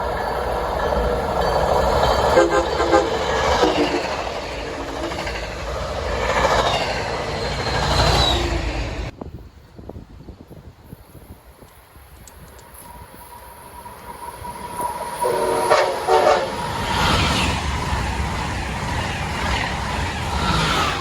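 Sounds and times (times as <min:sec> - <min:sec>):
train wheel and rail noise: 0:00.0 - 0:21.0
train horn notes: 0:02.3 - 0:04.0, 0:15.2 - 0:16.8.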